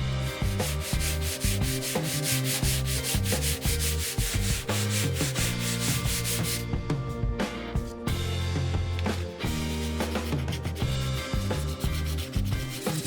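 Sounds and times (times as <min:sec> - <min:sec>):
chisel grating on sharpening stone: 0:09.9 - 0:13.0.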